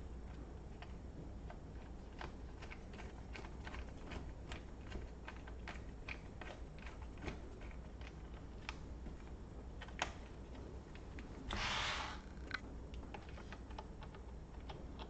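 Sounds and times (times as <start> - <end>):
scrape or rustle: 11.5 - 12.3.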